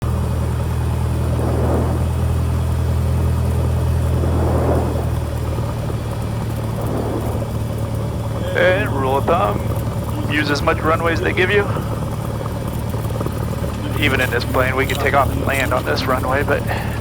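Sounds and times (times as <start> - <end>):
small plane engine running: 0.0 - 17.0.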